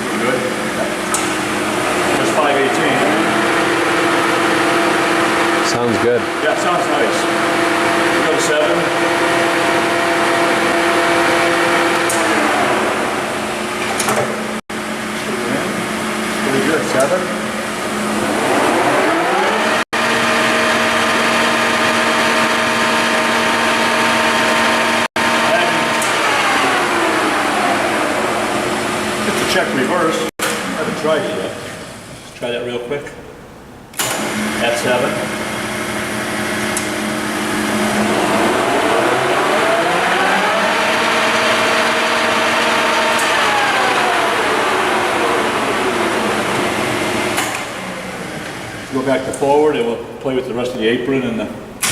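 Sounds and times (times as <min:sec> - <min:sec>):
lathe spindle whining: 0:00.0 - 0:30.9, 0:34.0 - 0:49.1.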